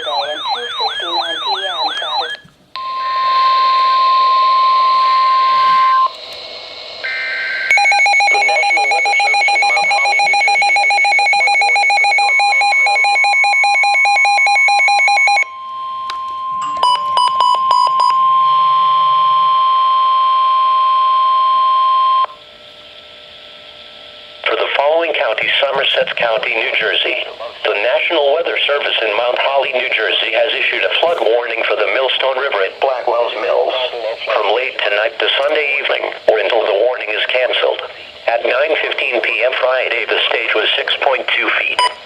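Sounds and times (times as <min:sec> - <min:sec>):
rapid electronic beeping alarm: 0:00.0 - 0:06.2, 0:07.0 - 0:22.4, 0:41.8 - 0:42.0
steady high alarm tone: 0:00.0 - 0:06.2, 0:07.0 - 0:22.4
faint hum: 0:00.0 - 0:42.0.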